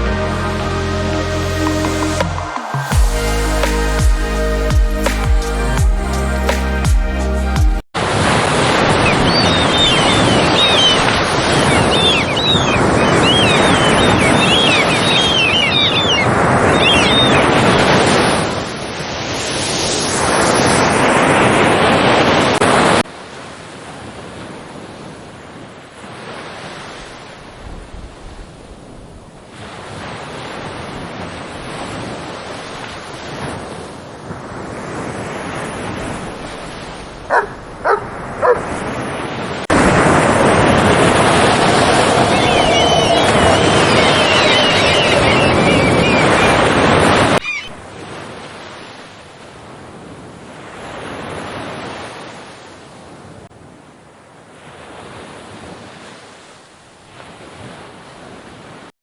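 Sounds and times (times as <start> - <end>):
loud rush of noise: 0.0 - 9.1, 35.3 - 47.4
dog barking: 37.3 - 38.8.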